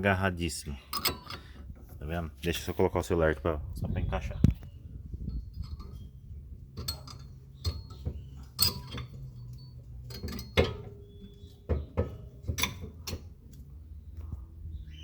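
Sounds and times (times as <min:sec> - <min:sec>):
metallic clicks and knocks: 0:00.8 - 0:02.0, 0:04.5 - 0:13.7.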